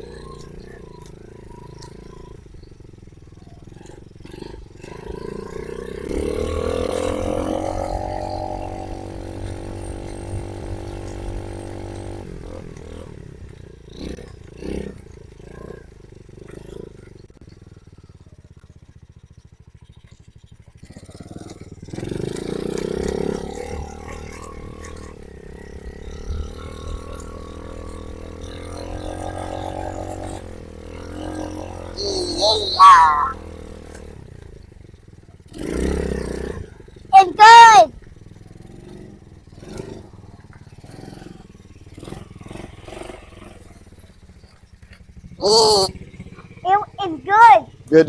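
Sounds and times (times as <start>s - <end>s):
dirt bike engine revving: 3.7s - 13.2s, 20.9s - 34.2s, 34.9s - 48.0s.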